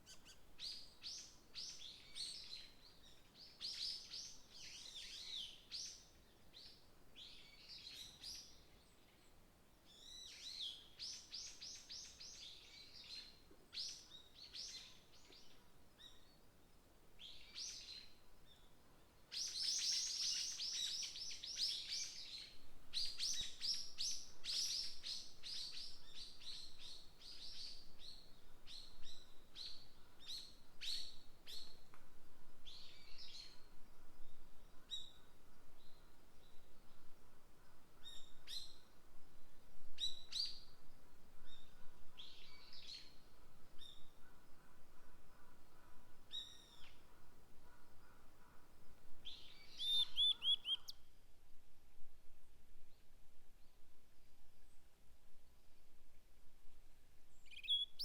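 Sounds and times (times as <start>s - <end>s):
songbirds chirping and trilling: 40.2s - 51.0s, 57.4s - 58.0s.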